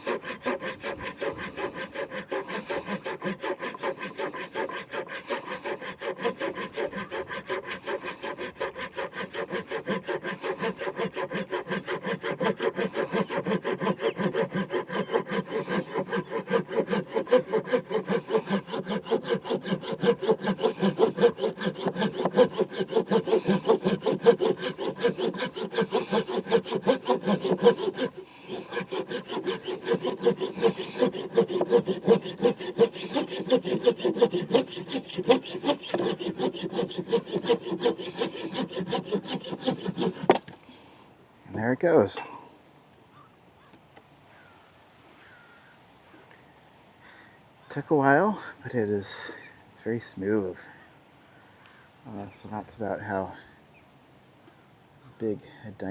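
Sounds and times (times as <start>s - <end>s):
pull saw cutting wood: 0.0s - 40.6s.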